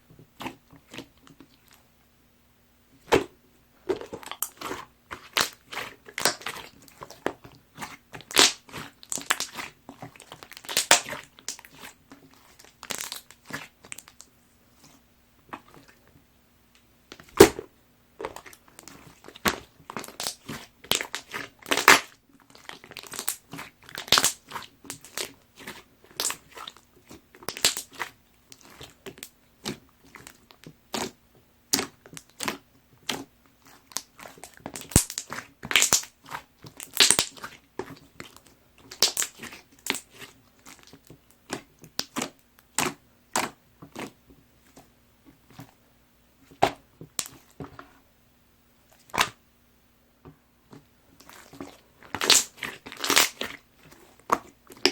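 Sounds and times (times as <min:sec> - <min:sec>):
slime being squished by hand: 0:03.9 - 0:16.0, 0:17.1 - 0:45.7, 0:46.5 - 0:47.8, 0:48.9 - 0:49.4, 0:51.2 - 0:54.9.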